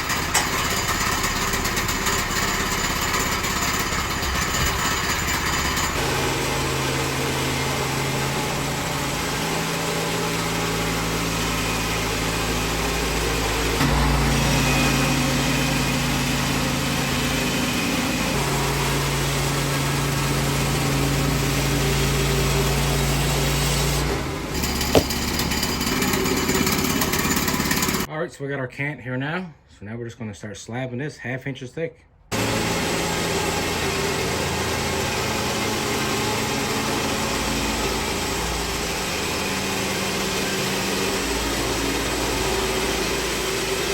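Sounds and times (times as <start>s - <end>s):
small gasoline engine running: 0.0s - 28.1s, 32.3s - 43.9s
band blade sawing through log: 24.6s - 28.0s
sharp knock: 24.9s - 25.3s.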